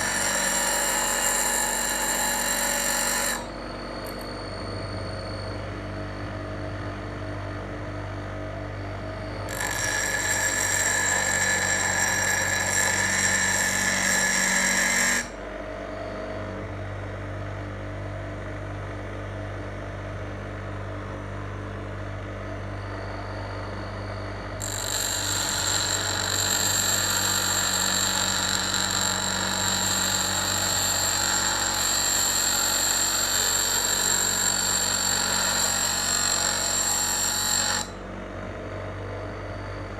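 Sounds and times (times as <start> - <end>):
bench grinder motor hum: 0.0 - 4.8, 9.3 - 15.4, 24.0 - 38.8.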